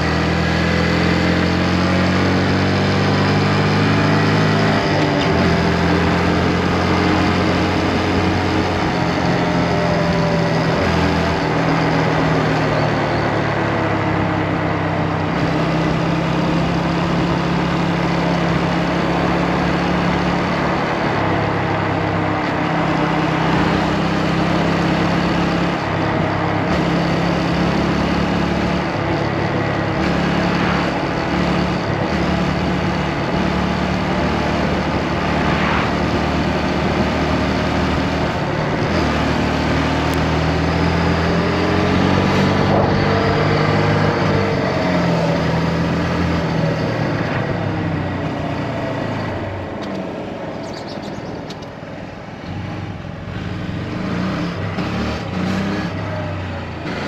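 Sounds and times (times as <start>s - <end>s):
motorcycle engine running: 0.0s - 55.3s
wind noise: 28.8s - 51.5s.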